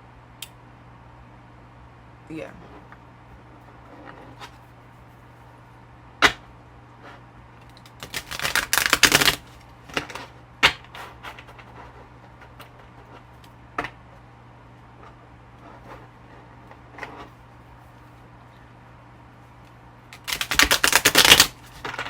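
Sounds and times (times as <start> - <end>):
cards being shuffled: 7.7 - 10.3, 20.2 - 22.0.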